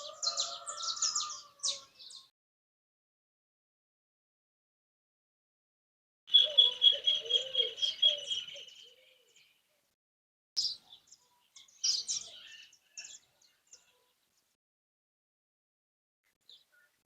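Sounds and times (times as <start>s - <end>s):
songbirds chirping: 0.0s - 2.3s, 6.3s - 10.0s, 10.6s - 14.6s, 16.3s - 17.0s.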